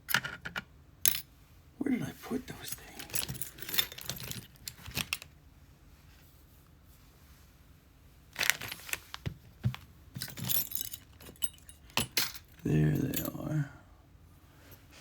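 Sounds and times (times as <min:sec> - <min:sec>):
metal tools clinking: 0:02.5 - 0:05.2, 0:10.2 - 0:13.5.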